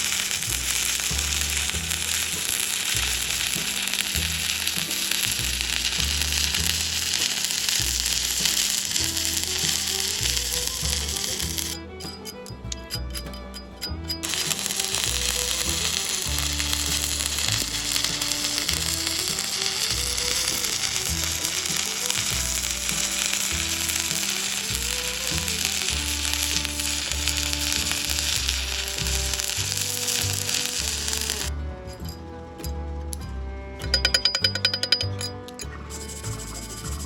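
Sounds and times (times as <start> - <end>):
welding arc frying hiss: 0.0 - 11.8, 14.2 - 31.5
background music: 0.0 - 37.0.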